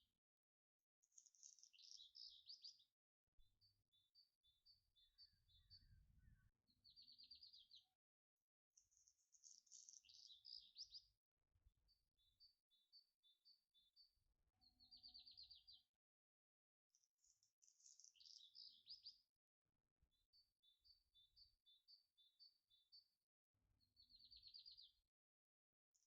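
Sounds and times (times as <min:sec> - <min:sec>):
birds chirping and trilling: 0:01.1 - 0:02.9, 0:03.6 - 0:07.9, 0:08.8 - 0:11.2, 0:11.8 - 0:15.9, 0:17.0 - 0:19.3, 0:20.2 - 0:23.1, 0:23.8 - 0:25.0.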